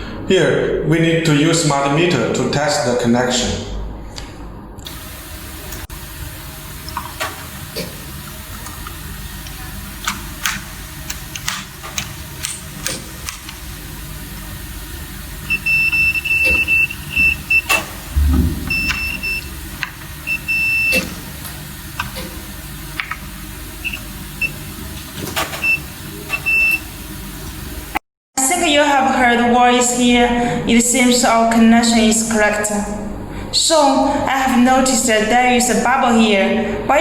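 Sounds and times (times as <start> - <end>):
multimeter high-pitched beeps: 15.5 - 17.8, 18.6 - 19.5, 20.3 - 21.0, 25.6 - 26.8
low knock: 18.1 - 18.9.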